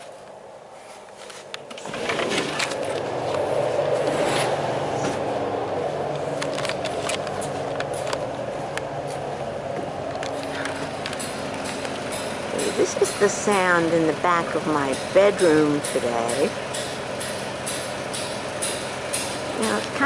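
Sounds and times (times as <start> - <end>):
power equipment grinding: 1.7 - 5.0, 10.3 - 20.0.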